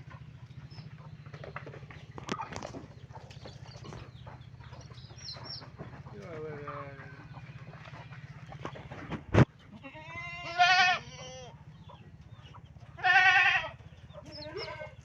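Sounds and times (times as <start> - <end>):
farm animal bleating: 4.9 - 11.8, 12.8 - 15.0.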